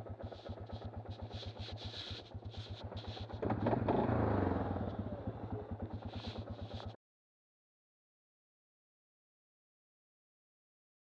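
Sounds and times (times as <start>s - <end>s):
single-cylinder engine pulsing: 0.0s - 7.0s.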